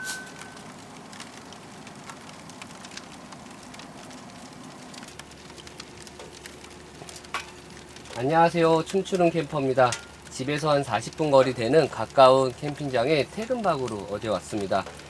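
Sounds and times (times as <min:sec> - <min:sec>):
single-pitch chime: 0:00.0 - 0:00.6
firewood crackling and popping: 0:00.0 - 0:15.0.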